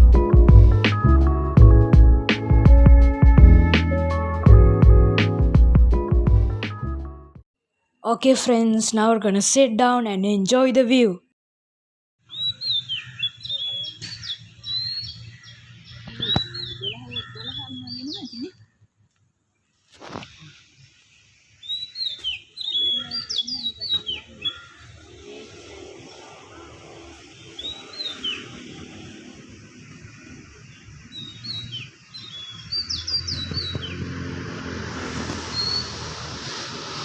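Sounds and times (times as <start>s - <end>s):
birds chirping: 12.3s - 18.8s, 20.5s - 36.2s
steady outdoor hiss: 19.6s - 37.0s.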